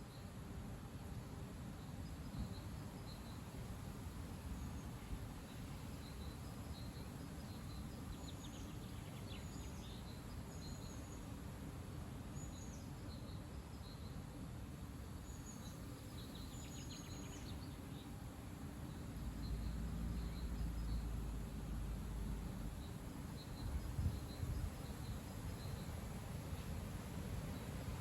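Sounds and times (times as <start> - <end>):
wind rumbling on microphone: 19.7 - 28.0.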